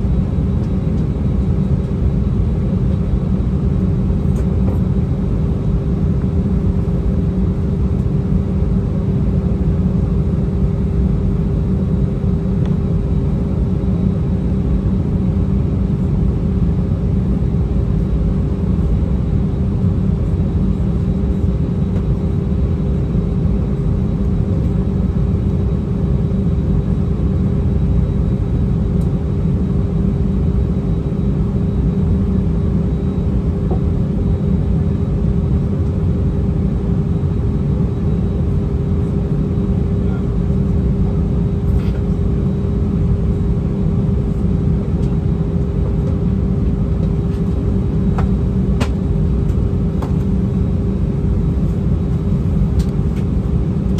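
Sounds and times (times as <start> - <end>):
jet engines idling: 27.3 - 53.9.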